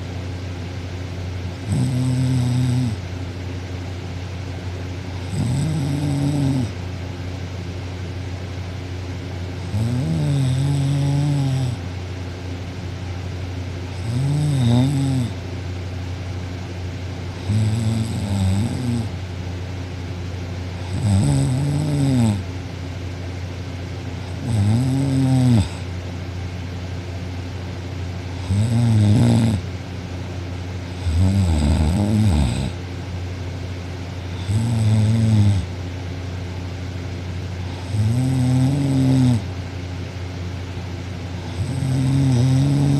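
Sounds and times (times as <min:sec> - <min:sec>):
woman snoring loudly: 0:01.6 - 0:03.0, 0:05.2 - 0:06.8, 0:09.6 - 0:11.8, 0:14.0 - 0:15.4, 0:17.4 - 0:19.2, 0:20.8 - 0:22.4, 0:24.3 - 0:25.8, 0:28.4 - 0:29.6, 0:30.9 - 0:32.8, 0:34.3 - 0:35.7, 0:37.7 - 0:39.5, 0:41.4 - 0:42.9.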